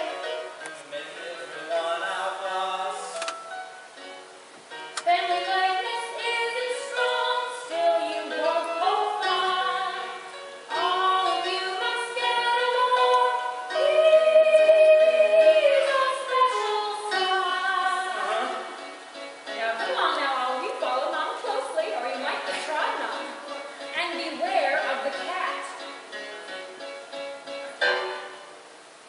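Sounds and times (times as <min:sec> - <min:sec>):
woman singing: 0:05.0 - 0:18.8, 0:19.4 - 0:25.9.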